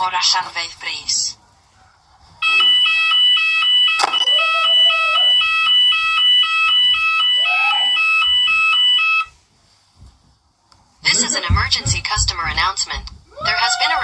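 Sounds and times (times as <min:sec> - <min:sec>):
electronic two-tone fire alarm: 0:02.4 - 0:09.4.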